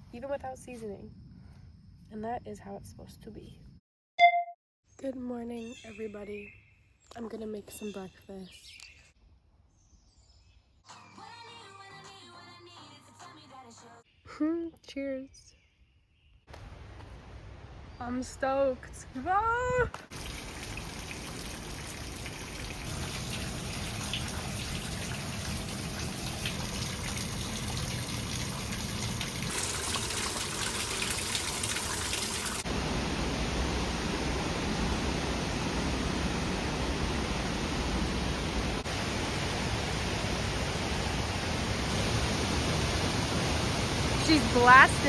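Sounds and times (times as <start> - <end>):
waterfall rushing: 32.5 - 45.0.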